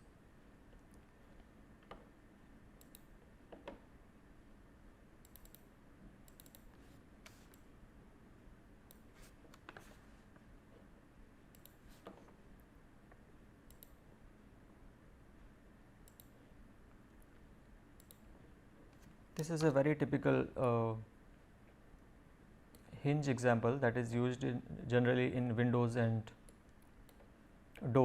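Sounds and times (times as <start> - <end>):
computer mouse and keyboard clicks: 2.8 - 3.8, 5.2 - 7.7, 11.5 - 12.4, 13.7 - 14.0, 16.0 - 16.4, 18.0 - 18.3.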